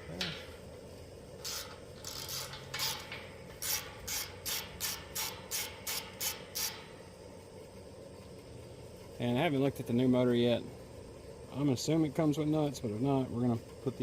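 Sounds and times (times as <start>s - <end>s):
ratchet wrench rasping: 1.4s - 6.9s.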